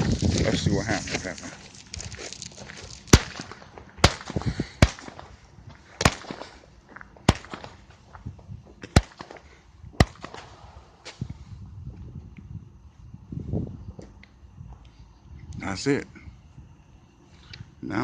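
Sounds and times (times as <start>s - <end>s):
firework shots popping: 2.8s - 8.0s, 8.8s - 11.3s.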